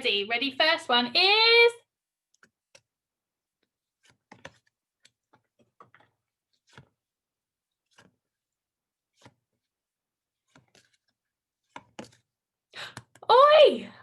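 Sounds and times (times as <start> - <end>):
flashcards clicking and tapping: 3.6 - 7.0, 7.7 - 8.4, 9.1 - 9.6, 10.4 - 13.2.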